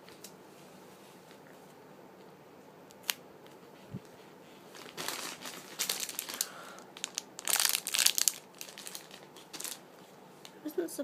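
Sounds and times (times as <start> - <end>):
plastic wrapping crinkling: 4.7 - 10.6.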